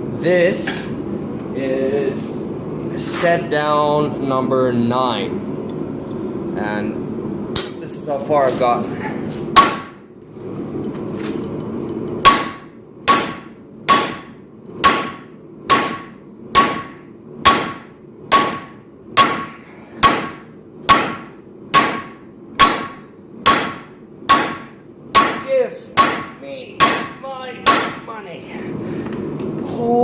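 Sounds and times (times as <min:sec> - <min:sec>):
hammer striking steel on anvil: 0:09.6 - 0:10.0, 0:12.2 - 0:28.1.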